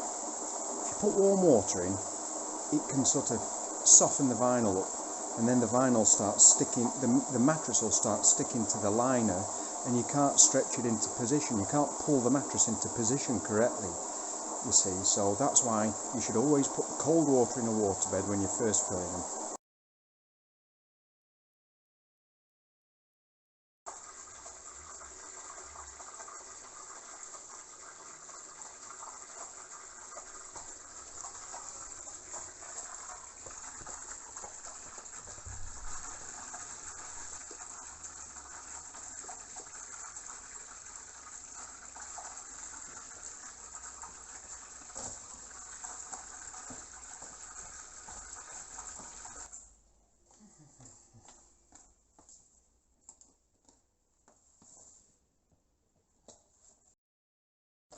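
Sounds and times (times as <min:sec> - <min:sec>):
water gushing from hose: 0:00.0 - 0:19.6, 0:23.9 - 0:49.5.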